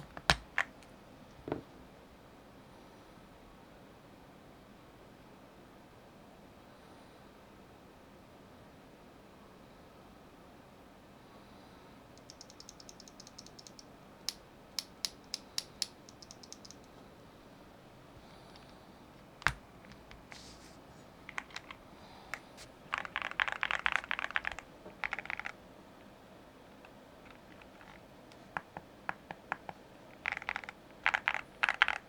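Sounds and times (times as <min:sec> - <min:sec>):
keyboard keys typing: 0:00.0 - 0:00.8, 0:12.2 - 0:13.9, 0:14.8 - 0:16.9, 0:21.3 - 0:25.6, 0:27.2 - 0:32.0.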